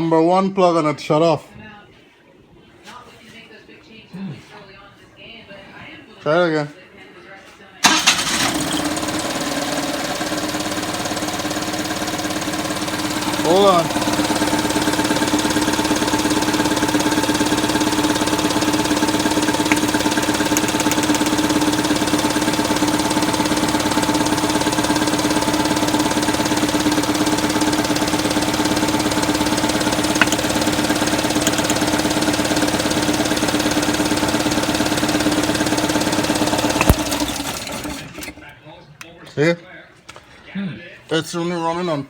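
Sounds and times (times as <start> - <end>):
car engine idling with misfire: 7.8 - 38.4.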